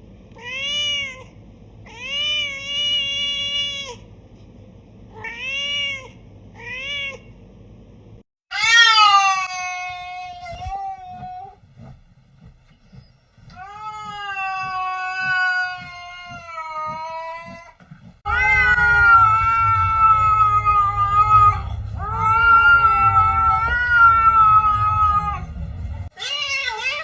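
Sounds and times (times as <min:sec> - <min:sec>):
low rumbling noise: 0:00.0 - 0:08.2, 0:17.1 - 0:26.2
cat yowling: 0:08.5 - 0:11.6, 0:13.6 - 0:17.6, 0:18.3 - 0:25.5, 0:26.2 - 0:27.0.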